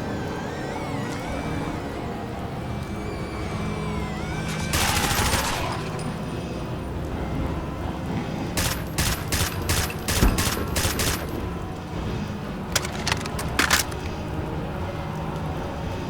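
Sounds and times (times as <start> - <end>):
gunshots: 4.5 - 6.0, 8.6 - 11.6, 12.7 - 14.2.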